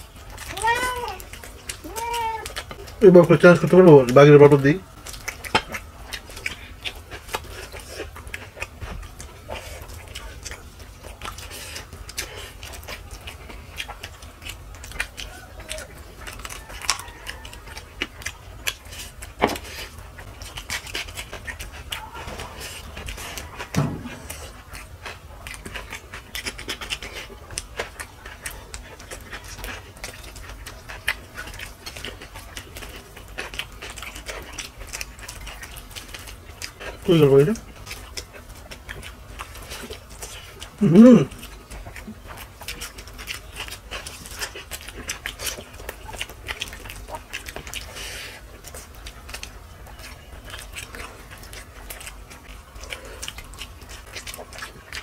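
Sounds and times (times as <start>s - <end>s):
chewing mouth sounds: 0.0s - 55.0s
heavy mouth breathing: 47.8s - 48.5s.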